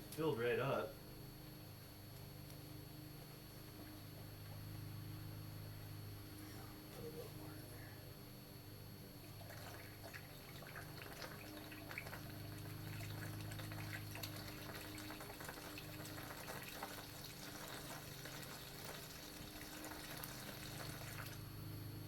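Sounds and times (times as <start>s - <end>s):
liquid pouring with splashes: 9.3s - 21.4s.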